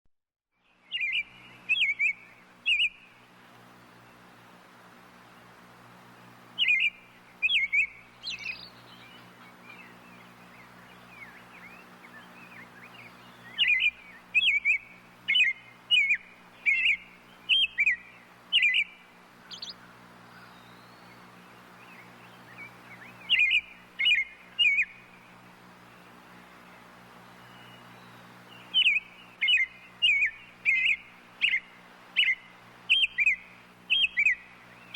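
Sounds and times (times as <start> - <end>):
soft bird twittering: 0.6 - 34.9
robin calling: 0.7 - 34.9.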